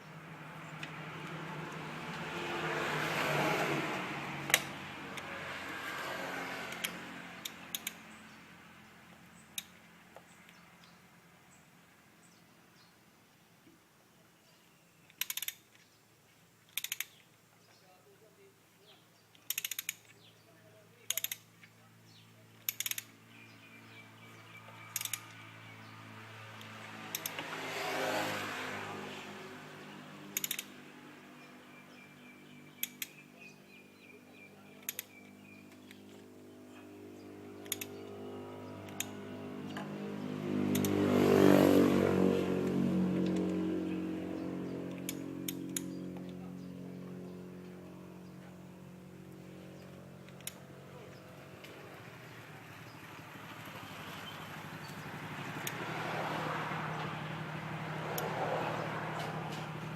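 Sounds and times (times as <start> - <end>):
ratchet wrench clicking: 6.7 - 8.0, 15.1 - 15.7, 16.6 - 17.2, 19.3 - 20.2, 21.1 - 21.5, 22.6 - 23.1, 24.9 - 25.4, 26.6 - 27.4, 30.3 - 30.7, 32.8 - 33.2, 34.8 - 35.1, 37.6 - 38.0, 40.7 - 41.0, 50.3 - 50.6
light clicks: 37.6 - 38.0, 40.7 - 41.0.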